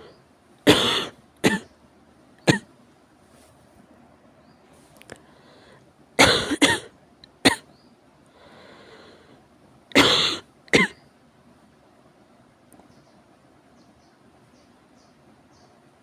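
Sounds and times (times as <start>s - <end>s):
harsh coughing: 0.7s - 1.7s, 2.5s - 2.7s, 6.2s - 7.7s, 9.9s - 11.0s
faint breath: 4.7s - 6.0s, 8.3s - 9.5s.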